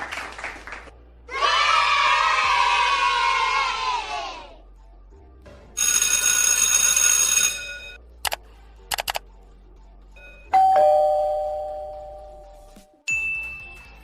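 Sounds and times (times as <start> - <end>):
quick clicks: 8.3 - 9.2
two-tone doorbell chime: 10.2 - 13.9.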